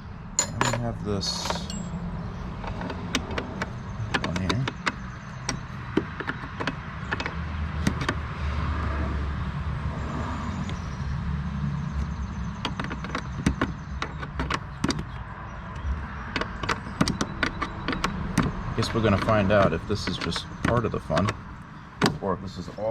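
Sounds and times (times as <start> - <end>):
hand tool clicks and knocks: 0.4 - 2.0, 2.6 - 8.2, 12.6 - 21.4.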